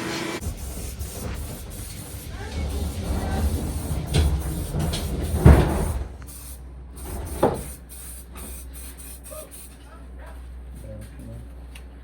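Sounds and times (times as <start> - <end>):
knocks and thumps: 0.4 - 6.2.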